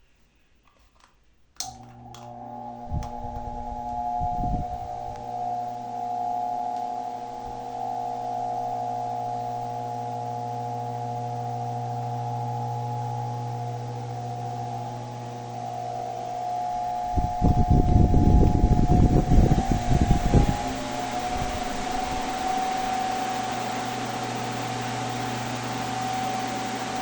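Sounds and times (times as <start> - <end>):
fan motor humming: 1.6 - 27.0
wind buffeting microphone: 2.8 - 5.3, 17.0 - 22.6.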